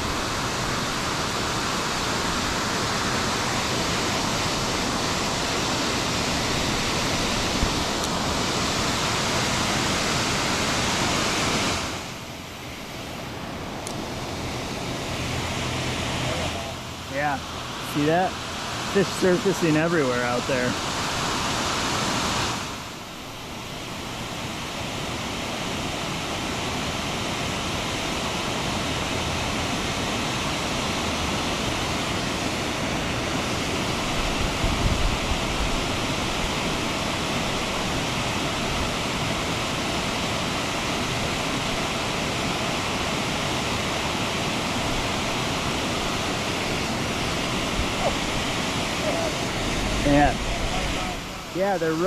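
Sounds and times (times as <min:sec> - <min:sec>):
fast-flowing creek water: 0:00.0 - 0:52.0
low rumble: 0:49.2 - 0:51.6.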